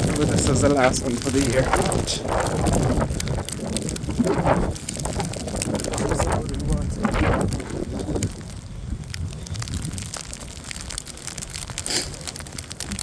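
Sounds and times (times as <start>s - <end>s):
footsteps crunching in snow: 0.0s - 6.4s, 11.8s - 12.3s.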